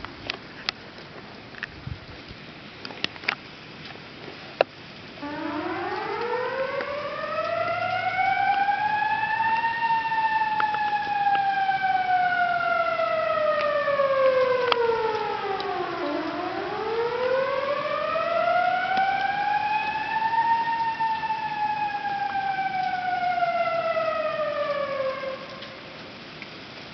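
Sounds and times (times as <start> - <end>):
warning siren wailing: 5.1 - 26.4.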